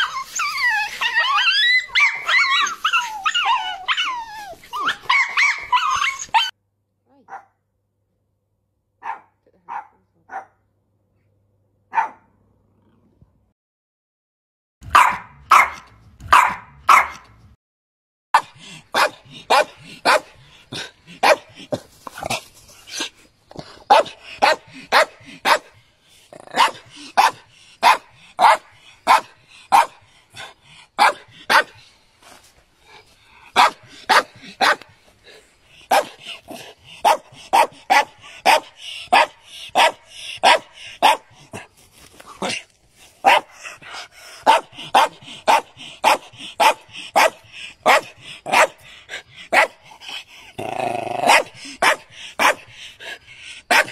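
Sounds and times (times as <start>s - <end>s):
dog barking in sharp yaps: 11.9s - 12.3s, 14.8s - 17.4s, 43.2s - 43.5s.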